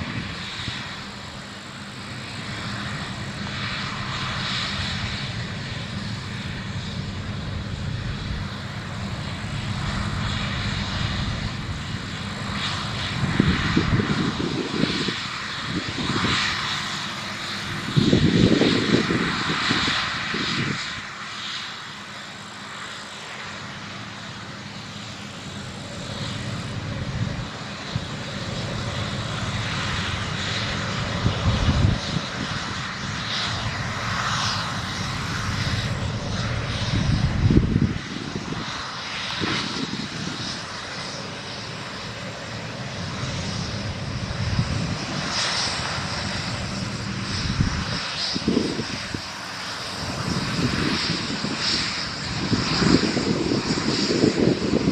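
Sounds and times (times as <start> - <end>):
combine harvester drone: 0.0 - 54.9.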